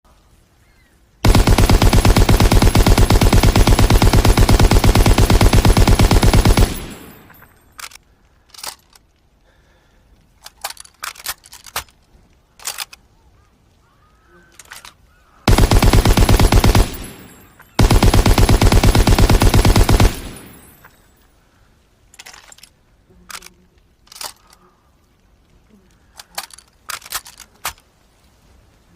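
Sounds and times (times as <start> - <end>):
machine gun firing bursts: 1.2 - 7.4, 15.5 - 20.8
metallic clicks and clacks: 10.4 - 13.0, 22.1 - 24.6, 26.1 - 27.9.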